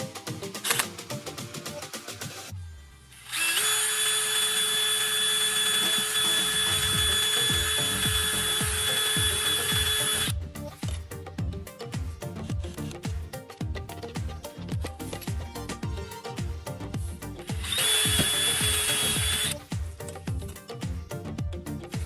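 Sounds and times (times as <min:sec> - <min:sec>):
electric power tool motor whine: 0:02.6 - 0:10.3, 0:17.5 - 0:19.6.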